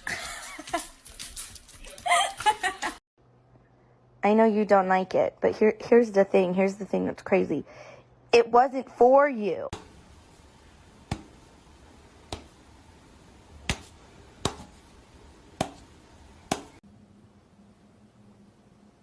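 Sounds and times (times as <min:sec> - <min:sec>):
faint steady hum: 0:09.8 - 0:19.0.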